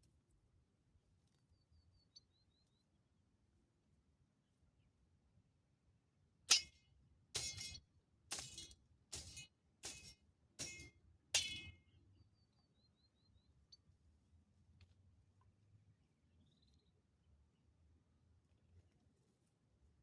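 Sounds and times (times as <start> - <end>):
faint high chirps: 1.3 - 3.0, 16.4 - 17.1.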